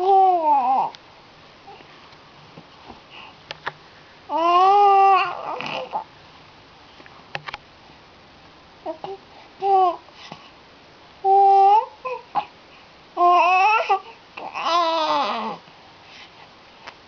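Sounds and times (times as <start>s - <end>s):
baby babbling cry: 0.0s - 1.0s, 4.3s - 6.0s, 8.8s - 10.0s, 11.2s - 12.5s, 13.2s - 15.6s.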